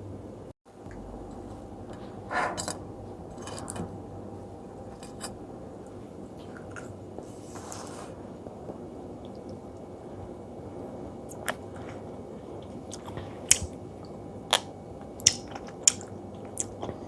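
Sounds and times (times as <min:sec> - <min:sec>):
steady low hum: 0:00.0 - 0:17.0
jelly being eaten: 0:14.5 - 0:17.0.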